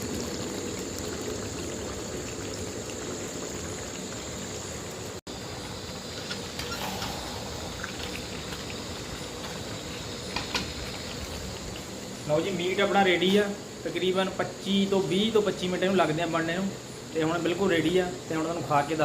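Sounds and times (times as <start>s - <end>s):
pouring water rushing: 0.0s - 13.8s.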